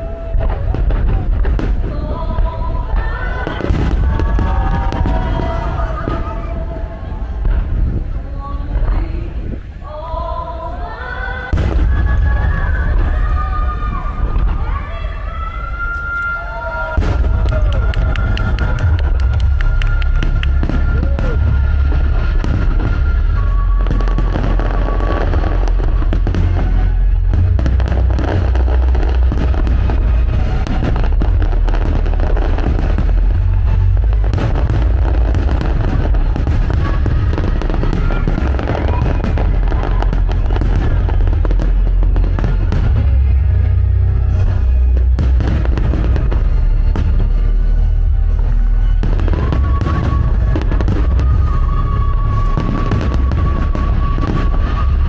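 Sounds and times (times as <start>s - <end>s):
fireworks booming and crackling: 0.0s - 10.0s, 11.4s - 55.0s
music playing: 16.5s - 55.0s.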